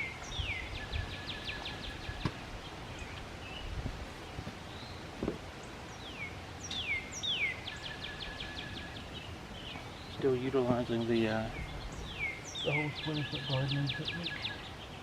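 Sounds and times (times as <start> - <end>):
songbird singing: 0.0 - 15.0.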